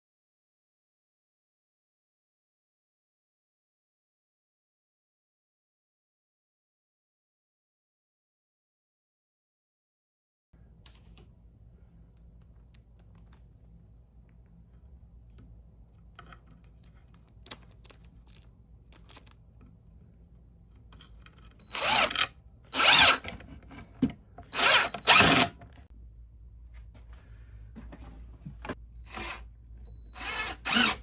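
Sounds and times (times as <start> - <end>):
power tool bursts: 21.7 - 23.2, 24.5 - 25.6, 30.2 - 31.0.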